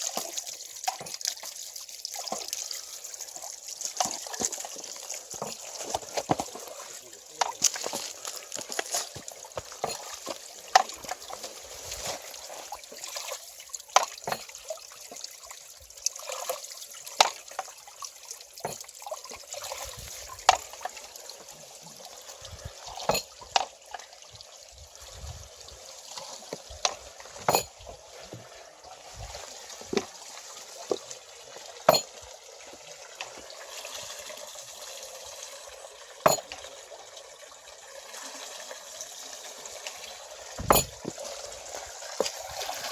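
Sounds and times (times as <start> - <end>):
water wheel clicks: 0.0 - 1.6, 3.9 - 6.7, 7.3 - 12.2, 13.8 - 15.3, 16.0 - 17.8, 18.6 - 19.8, 20.4 - 21.6, 23.0 - 24.0, 26.5 - 27.9, 31.8 - 32.2, 36.2 - 36.7, 40.6 - 41.3
stream water trickling and splashing: 0.0 - 42.9.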